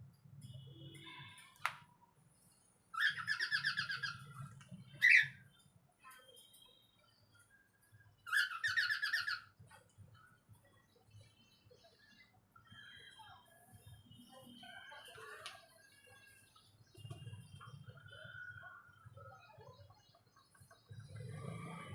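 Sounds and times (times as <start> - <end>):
parrots chattering: 3.0 - 5.4, 8.3 - 9.6.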